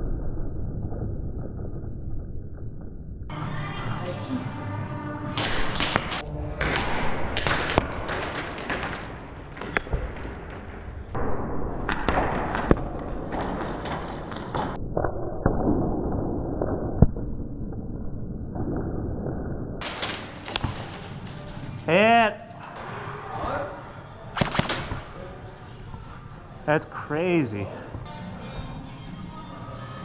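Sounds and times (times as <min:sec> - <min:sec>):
sharp cracks: 0:05.4 - 0:10.0, 0:19.8 - 0:21.3, 0:24.3 - 0:25.5.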